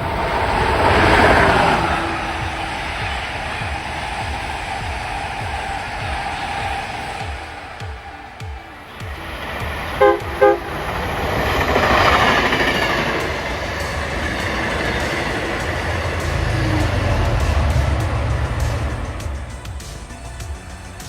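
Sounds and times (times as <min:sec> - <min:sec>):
passing train rush and rumble: 0:00.0 - 0:21.0
train horn blasts: 0:07.8 - 0:19.6.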